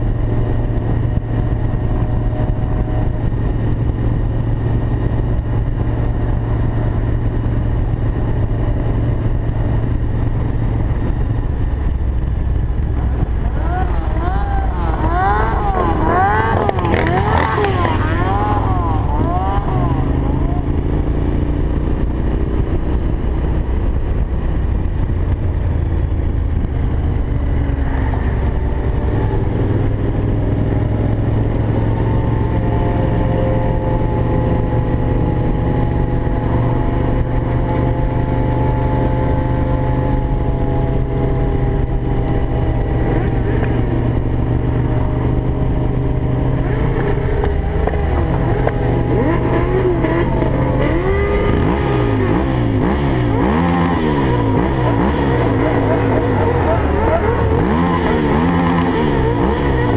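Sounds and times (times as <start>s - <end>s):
engines idling and revving: 0.0s - 59.9s
wavering siren wail: 13.0s - 21.0s.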